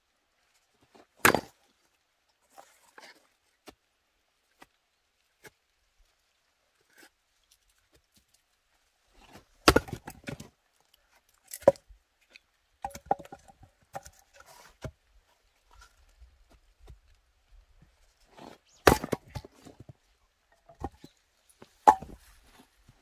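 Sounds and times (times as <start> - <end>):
axe splitting firewood: 1.2 - 1.6, 9.2 - 10.5, 11.5 - 11.8, 12.8 - 14.8, 18.4 - 19.9, 21.8 - 22.2
wood cracking: 9.2 - 10.5, 18.4 - 19.9.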